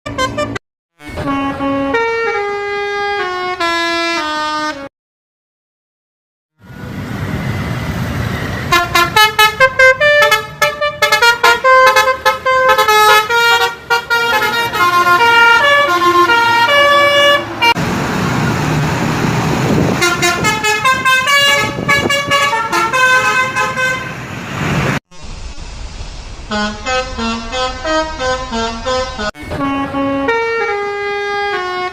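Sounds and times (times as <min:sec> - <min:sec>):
multi-tone bus horn melody: 0:00.1 - 0:04.9, 0:08.6 - 0:17.8, 0:19.7 - 0:24.3, 0:26.5 - 0:31.9
low engine rumble: 0:13.8 - 0:30.5.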